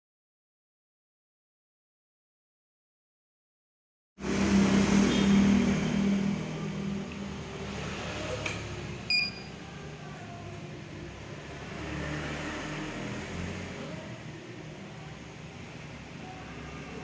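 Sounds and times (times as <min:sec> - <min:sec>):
high electronic beep: 0:09.1 - 0:09.5.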